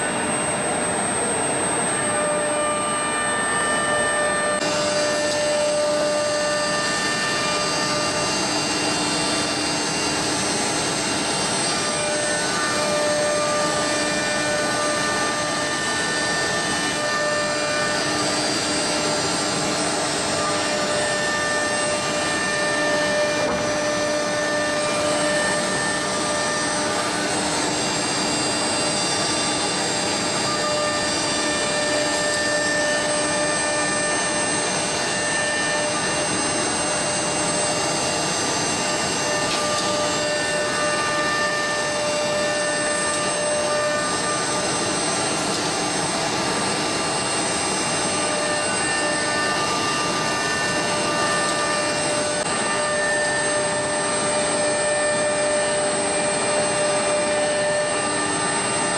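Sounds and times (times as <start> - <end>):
router machine whining: 0.0 - 58.9.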